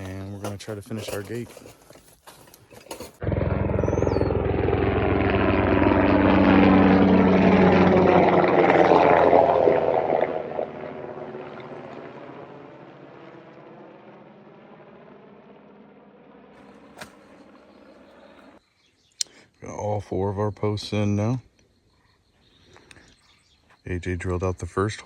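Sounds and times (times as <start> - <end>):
helicopter rotor beating: 3.1 - 18.6
helicopter engine drone: 3.2 - 18.6.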